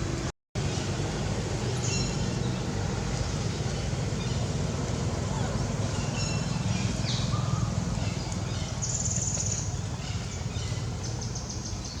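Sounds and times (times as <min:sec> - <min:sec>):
small birds chirping: 0:05.2 - 0:12.0.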